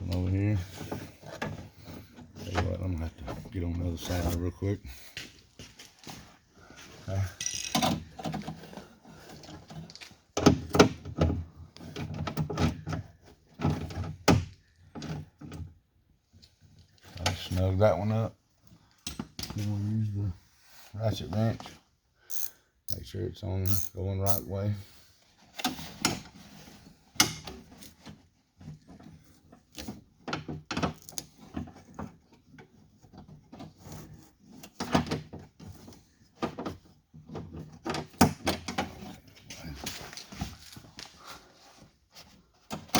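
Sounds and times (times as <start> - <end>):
ratchet wrench clicking: 22.3 - 23.0, 23.7 - 24.5.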